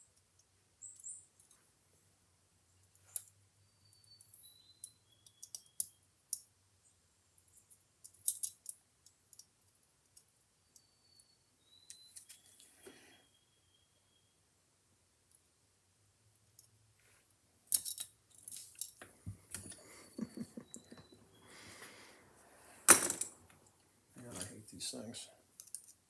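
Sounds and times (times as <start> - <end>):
small metallic clicks and taps: 2.8 - 6.5, 7.4 - 10.4, 17.7 - 19.8, 25.5 - 26.0
soft handling rustle: 18.4 - 26.0.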